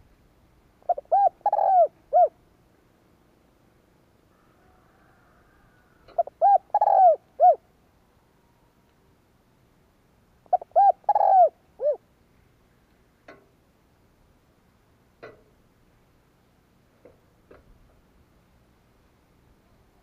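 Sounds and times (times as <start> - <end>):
dove cooing: 0.8 - 2.4, 4.3 - 7.7, 10.5 - 12.0.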